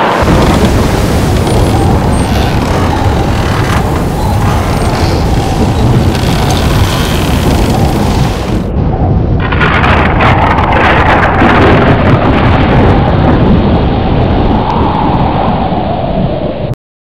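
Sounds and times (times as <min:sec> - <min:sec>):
rain hiss: 0:00.0 - 0:08.7
rolling thunder: 0:00.0 - 0:16.7
wind: 0:00.0 - 0:16.8.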